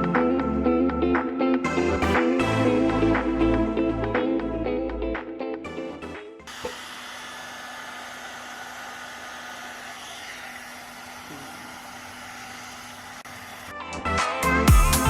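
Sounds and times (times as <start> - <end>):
background music: 0.0 - 6.5, 13.4 - 15.0
hair dryer blowing: 6.5 - 15.0.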